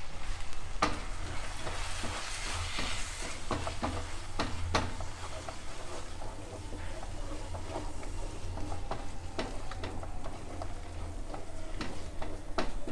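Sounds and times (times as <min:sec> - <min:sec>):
food sizzling in a frying pan: 0:00.6 - 0:06.2.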